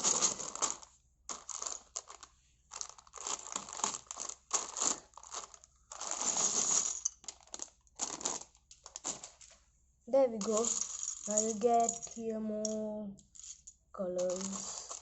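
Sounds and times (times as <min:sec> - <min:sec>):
plastic bag crinkling and tearing: 0:00.0 - 0:09.6.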